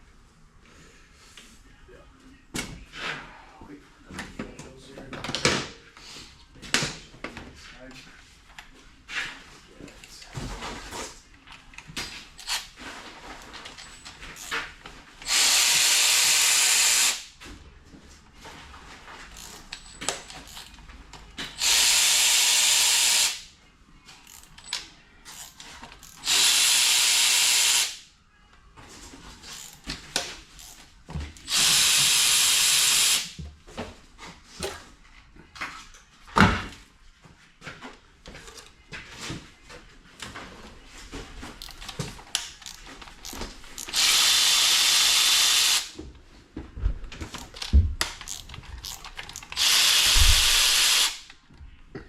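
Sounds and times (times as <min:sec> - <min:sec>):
power tool spinning bolts: 0:15.2 - 0:17.3, 0:21.6 - 0:23.4, 0:25.3 - 0:28.0, 0:31.5 - 0:33.3, 0:42.6 - 0:45.9, 0:48.2 - 0:51.2
clinks of bolts and hand tools: 0:19.4 - 0:20.8.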